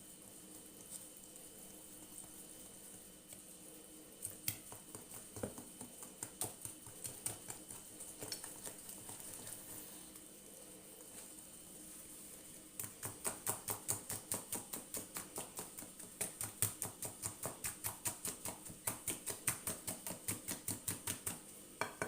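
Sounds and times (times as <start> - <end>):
utensil knocking against bowl: 12.8 - 22.0.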